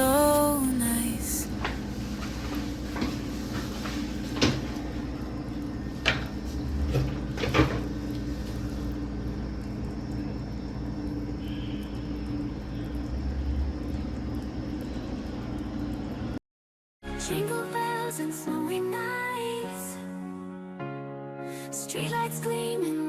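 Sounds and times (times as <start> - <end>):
steady low hum: 0.0 - 16.4.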